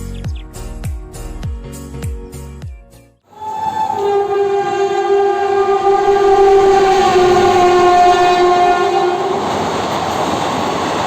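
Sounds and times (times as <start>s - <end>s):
two-tone locomotive horn: 3.3s - 9.8s
passing train rushing: 3.3s - 11.0s.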